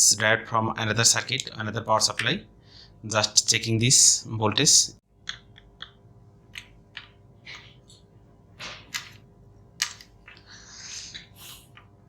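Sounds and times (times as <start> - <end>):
faint steady hum: 0.0 - 12.0
multimeter probe clicks and taps: 5.2 - 7.2.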